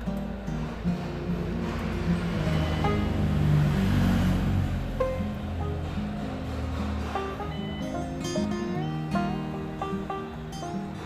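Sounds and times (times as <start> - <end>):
background music with low notes: 0.0 - 11.0.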